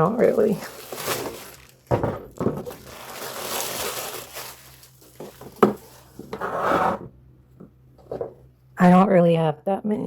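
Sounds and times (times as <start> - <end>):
packaging rustling: 0.2 - 6.4.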